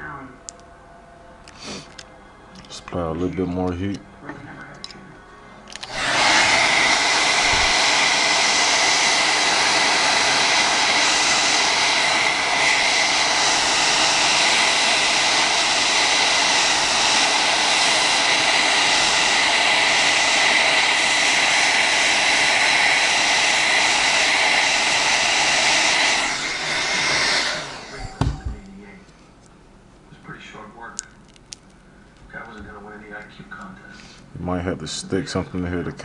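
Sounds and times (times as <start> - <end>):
hair dryer running: 5.7 - 28.7.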